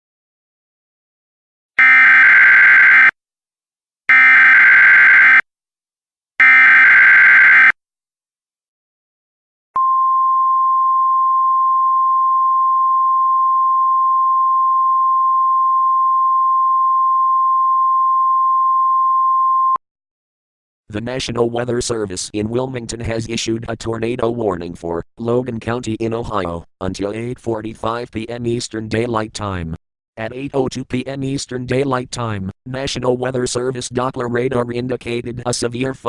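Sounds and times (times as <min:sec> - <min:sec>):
digital data tone bursts: 0:01.8 - 0:03.1, 0:04.1 - 0:05.4
steady attention tone: 0:01.8 - 0:03.1, 0:04.1 - 0:05.4.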